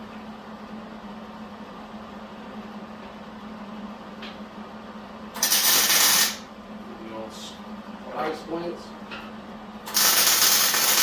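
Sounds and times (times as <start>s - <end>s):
steady low hum: 0.0s - 11.0s
welder crackling hiss: 5.4s - 6.4s, 9.9s - 11.0s.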